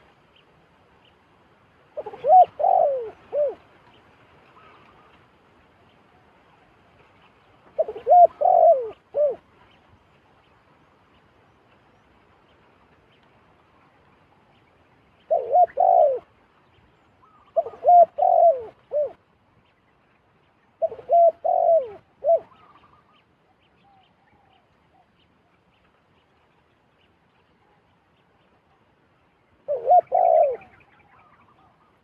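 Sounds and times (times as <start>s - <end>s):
dove cooing: 1.9s - 3.7s, 7.7s - 9.5s, 15.2s - 16.3s, 17.2s - 19.2s, 20.8s - 23.2s, 29.6s - 32.0s.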